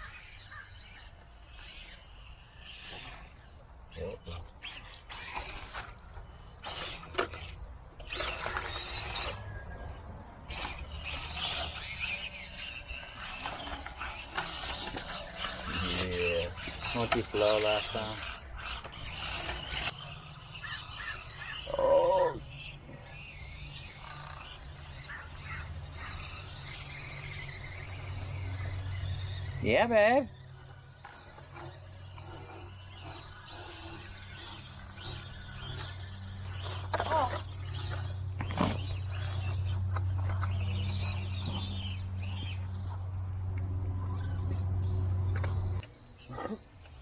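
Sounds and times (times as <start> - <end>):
toy car motor whirring: 0.0 - 46.0
steady low rumble: 34.2 - 45.8.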